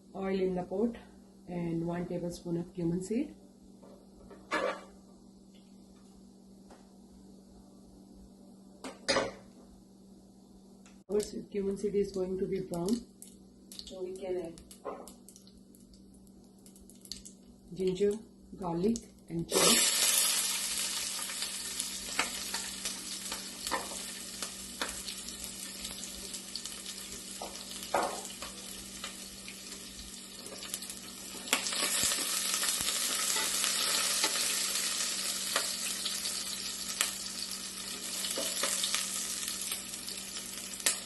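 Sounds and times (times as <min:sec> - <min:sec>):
food sizzling in hot oil: 0:19.5 - 0:41.0.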